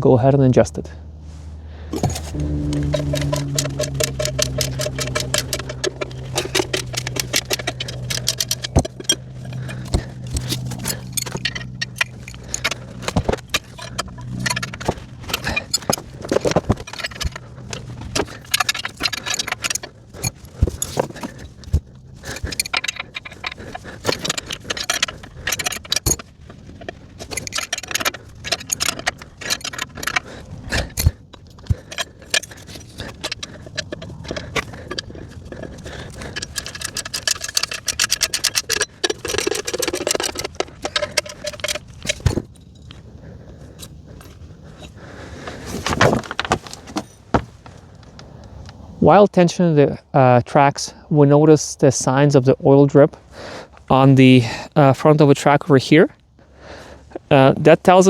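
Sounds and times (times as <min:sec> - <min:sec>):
wrenches clinking on metal: 0:01.9 - 0:48.2.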